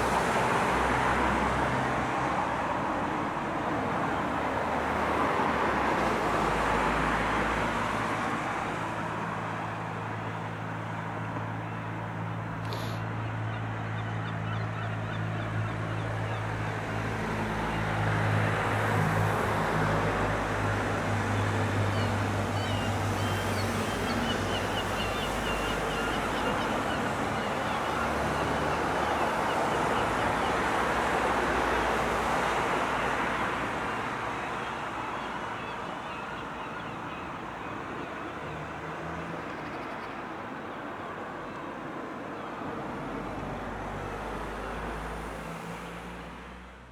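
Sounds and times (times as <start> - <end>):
traffic hum: 9.3 - 46.5
wash of traffic noise: 15.2 - 46.9.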